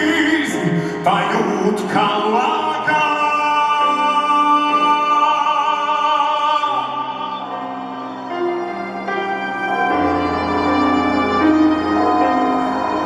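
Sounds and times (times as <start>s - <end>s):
man singing with vibrato: 0.0s - 8.7s
instrumental accompaniment chords: 6.8s - 13.0s.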